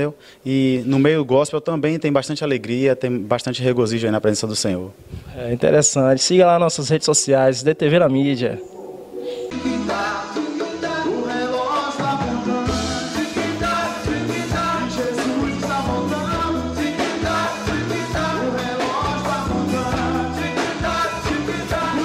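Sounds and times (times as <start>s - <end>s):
person singing: 9.1s - 22.0s
steady drum beat: 9.5s - 22.0s
bass line: 12.4s - 22.0s.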